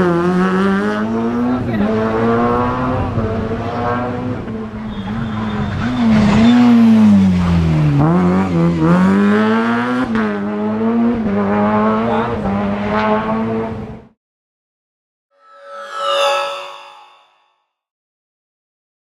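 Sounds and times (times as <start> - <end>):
rally car engine revving: 5.8 - 14.0.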